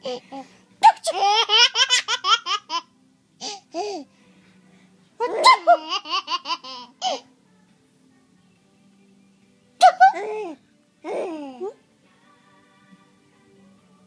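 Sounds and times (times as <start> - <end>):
baby laughing: 0.8 - 2.9, 5.2 - 7.2, 9.8 - 11.8.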